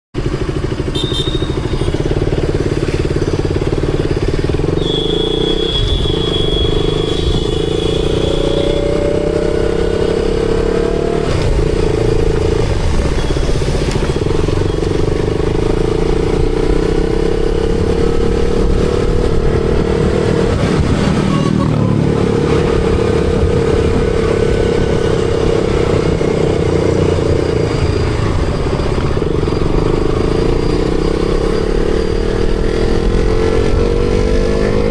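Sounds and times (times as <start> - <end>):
motorcycle engine shifting gear: 1.9 - 21.8.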